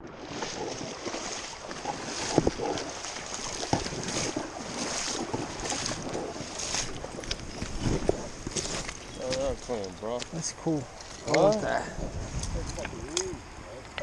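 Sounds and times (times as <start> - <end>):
creek water splashing: 0.0 - 14.0.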